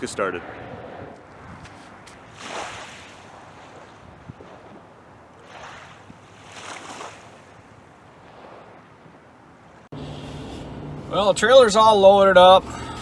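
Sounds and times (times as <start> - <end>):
wind blowing across microphone: 0.0 - 6.4.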